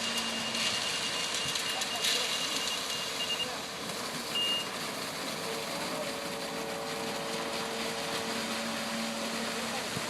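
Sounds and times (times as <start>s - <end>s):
heavy equipment engine running: 0.0s - 10.0s
short high beep: 0.1s - 3.5s, 4.4s - 4.7s.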